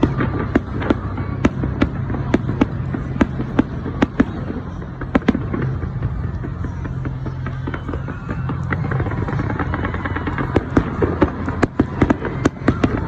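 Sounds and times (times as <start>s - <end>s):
fireworks bangs: 0.0s - 13.0s.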